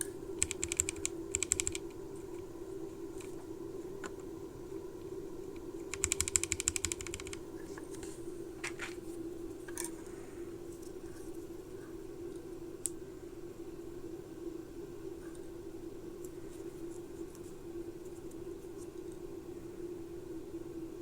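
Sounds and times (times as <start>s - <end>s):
mechanical keyboard keystrokes: 0.0s - 2.0s, 5.8s - 7.5s.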